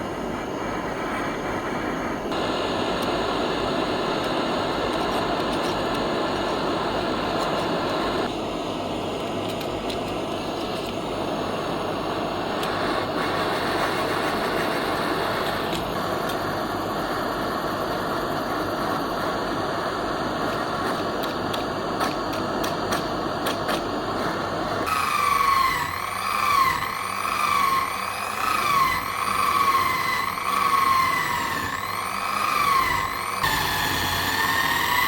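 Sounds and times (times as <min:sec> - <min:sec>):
motor whine: 0:24.4 - 0:35.0.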